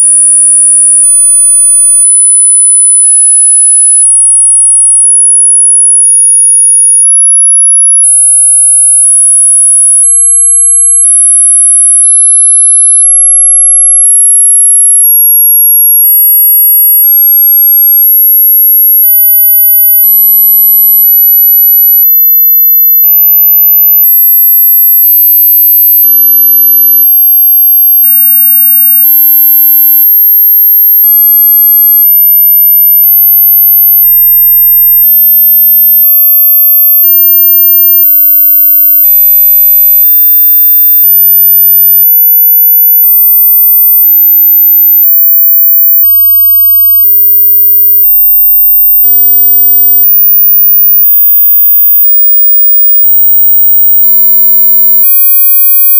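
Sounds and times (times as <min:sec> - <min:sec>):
high-pitched sine tone stepping up: 0:00.0 - 0:55.9.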